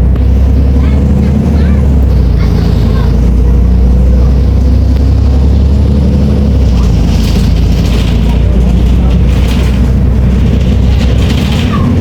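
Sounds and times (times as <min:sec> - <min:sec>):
bus engine droning: 0:00.0 - 0:12.0.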